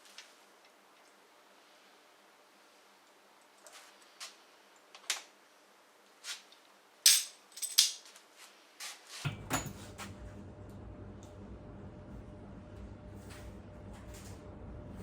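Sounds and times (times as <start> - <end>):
metal tools clinking: 7.1 - 8.2
low hum: 9.5 - 15.0.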